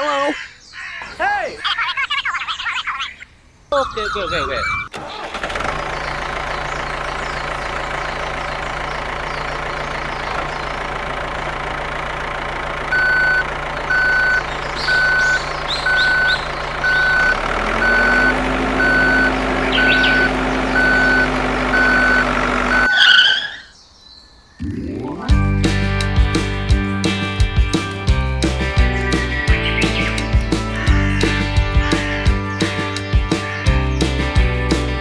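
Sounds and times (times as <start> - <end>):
reversing alarm beeping: 3.7 - 5.0, 12.9 - 23.1
truck engine running: 3.8 - 22.9, 25.4 - 32.9.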